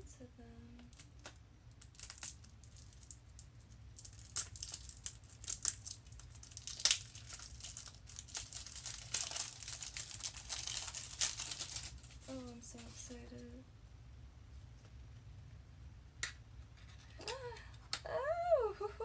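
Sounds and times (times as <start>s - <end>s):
plastic shrink-wrap crinkling: 0.8s - 13.2s.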